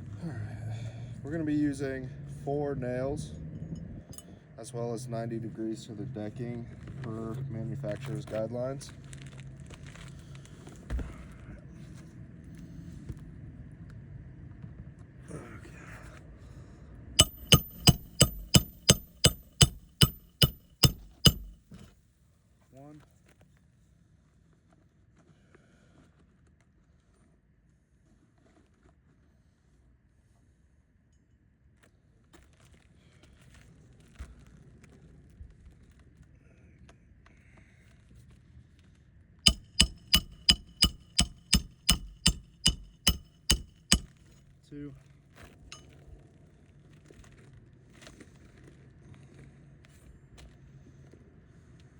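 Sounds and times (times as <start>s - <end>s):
hammer blows on nail: 17.2s - 21.8s, 39.5s - 44.1s.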